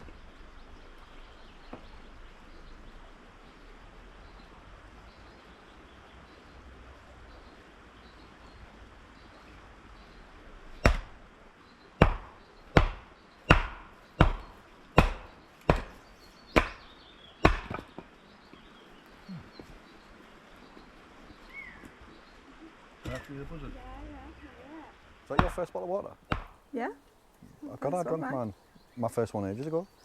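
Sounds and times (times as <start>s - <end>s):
wood being chopped: 10.8s - 11.2s, 12.0s - 18.1s, 25.3s - 25.7s, 26.3s - 26.6s.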